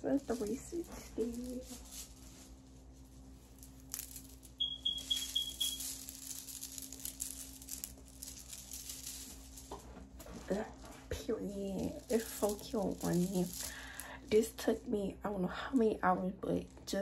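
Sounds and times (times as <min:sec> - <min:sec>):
steady low hum: 0:00.0 - 0:17.0
short high chirps: 0:04.6 - 0:05.9.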